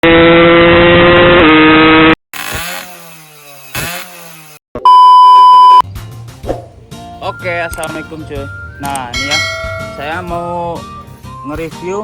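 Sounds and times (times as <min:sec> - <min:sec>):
motorcycle engine revving: 0:00.1 - 0:02.1
loud steady beep: 0:04.9 - 0:05.8.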